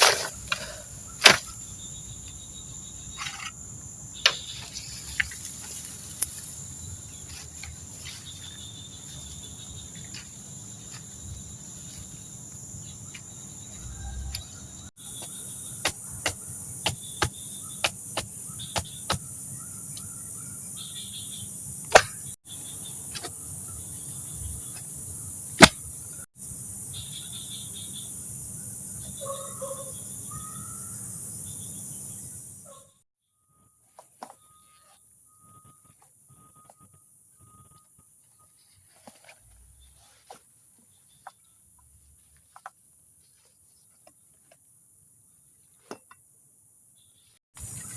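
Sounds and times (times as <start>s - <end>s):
insects chirring: 0.0s - 47.9s.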